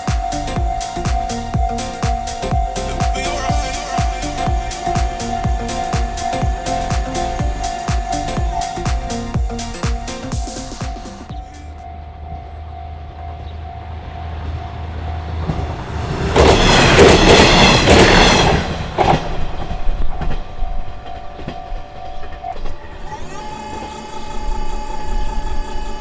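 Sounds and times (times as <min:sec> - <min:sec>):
steady tone: 0:00.0 - 0:18.0
train wheels rumbling: 0:00.0 - 0:26.0.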